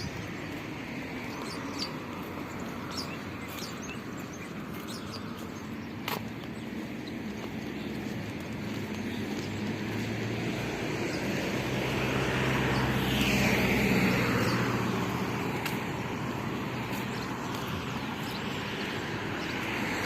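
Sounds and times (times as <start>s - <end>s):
vehicle passing by: 7.0s - 20.0s.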